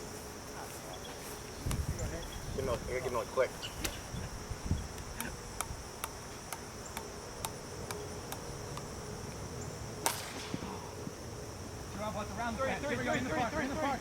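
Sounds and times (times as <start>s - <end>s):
high-pitched insect drone: 0.0s - 14.0s
sharp crack: 10.0s - 10.9s.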